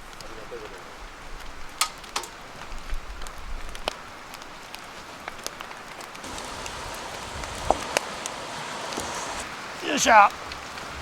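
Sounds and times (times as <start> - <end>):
campfire crackling and popping: 1.7 - 9.5
fire hiss: 6.2 - 9.5.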